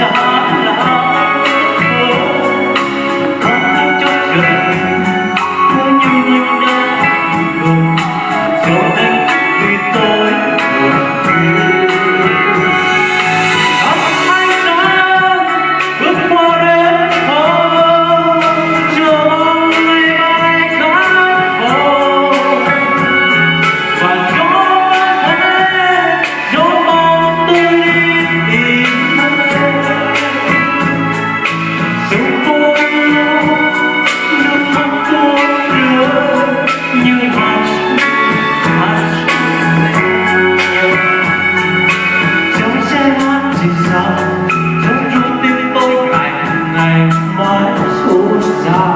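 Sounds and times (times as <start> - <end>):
ballad melody: 0.0 - 48.9
guitar accompaniment with beat: 0.0 - 48.9.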